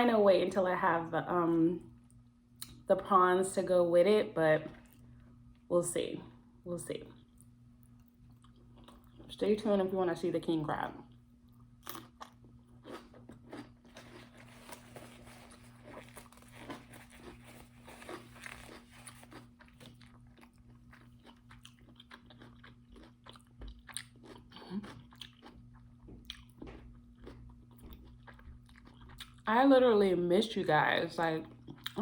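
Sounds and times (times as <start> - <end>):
person chewing and crunching food: 7.0 - 9.3, 11.0 - 29.5, 31.4 - 32.0.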